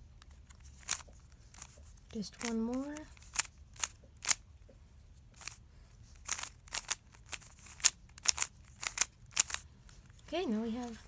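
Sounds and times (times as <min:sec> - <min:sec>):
plastic cube clicks: 0:00.2 - 0:04.4, 0:05.4 - 0:09.6.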